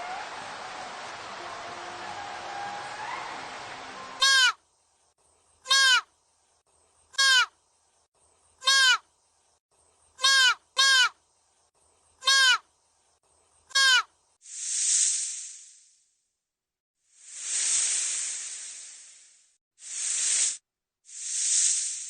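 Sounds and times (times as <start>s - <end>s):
whoosh: 14.4s - 16.0s, 17.2s - 22.0s.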